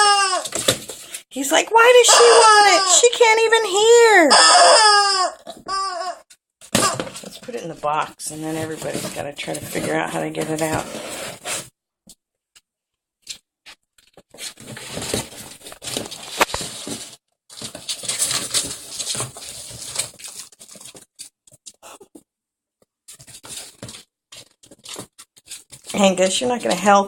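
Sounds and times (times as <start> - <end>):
ferrets scratching at a box: 0.1 - 1.2, 6.7 - 11.7, 14.1 - 21.8, 23.1 - 27.0.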